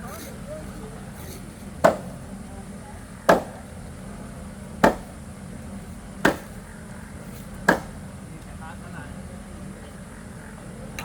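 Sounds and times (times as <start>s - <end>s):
hand tool chopping blows: 1.8s - 2.2s, 3.3s - 3.7s, 4.8s - 5.2s, 6.2s - 6.6s, 7.7s - 8.0s.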